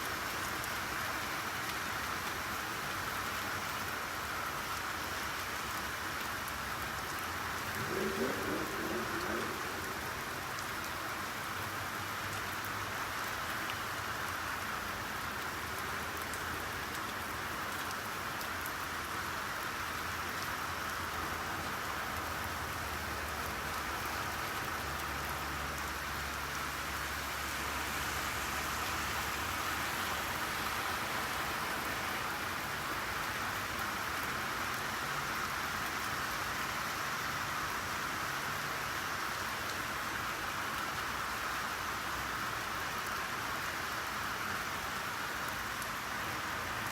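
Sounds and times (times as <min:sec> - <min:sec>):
rain falling: 0:00.0 - 0:46.9
low rumble: 0:07.7 - 0:10.9.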